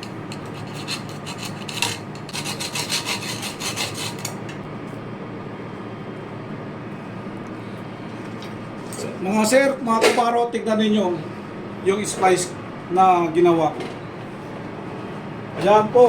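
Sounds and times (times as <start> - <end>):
wire rope scraping and rubbing: 0.0 - 4.3
steady low hum: 0.0 - 16.0.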